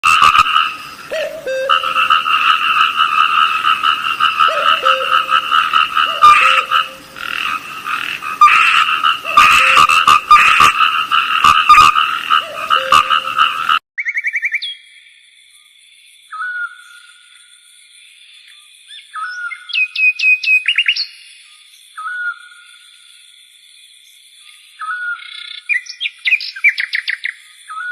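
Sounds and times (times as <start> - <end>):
low frog croak: 0.0 - 13.8
frogs trilling: 0.0 - 14.8.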